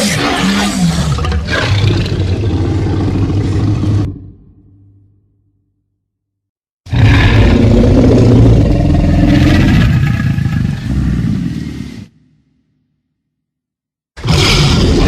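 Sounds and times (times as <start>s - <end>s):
deep dinosaur roar: 0.0s - 4.8s, 6.9s - 12.1s, 14.2s - 15.0s.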